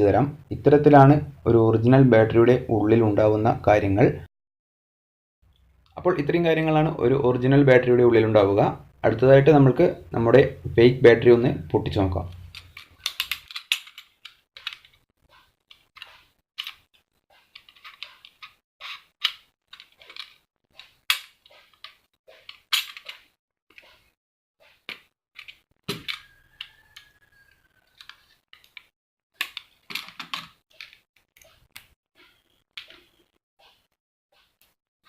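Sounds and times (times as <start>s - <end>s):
hand tools clicking on metal: 12.3s - 14.9s.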